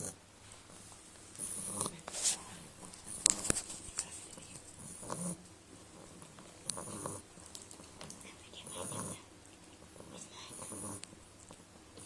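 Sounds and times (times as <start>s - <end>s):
dog snoring: 0.0s - 0.2s, 1.4s - 2.0s, 4.8s - 5.4s, 6.0s - 7.3s, 8.6s - 9.3s, 10.0s - 11.1s.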